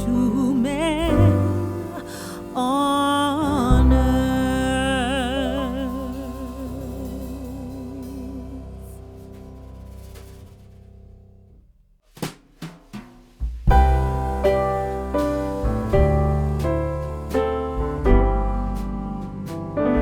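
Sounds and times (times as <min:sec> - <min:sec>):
drum hits: 0:12.0 - 0:20.0
keyboard and drums music: 0:12.2 - 0:20.0.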